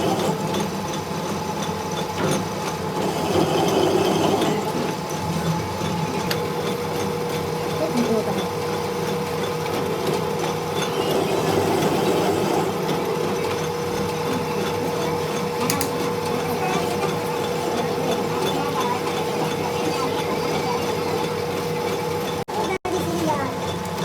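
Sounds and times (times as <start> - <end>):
workshop machine humming: 0.0 - 24.0.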